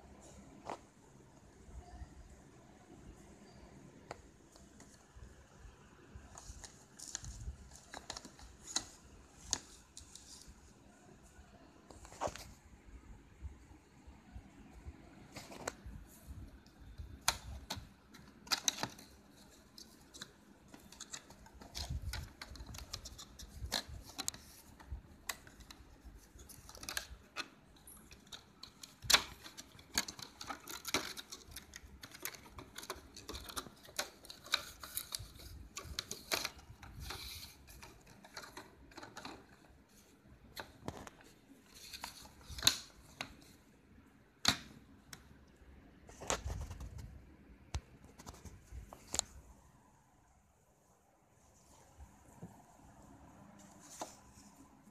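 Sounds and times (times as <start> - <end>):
hands handling packaging: 6.2 - 10.7, 15.3 - 43.6.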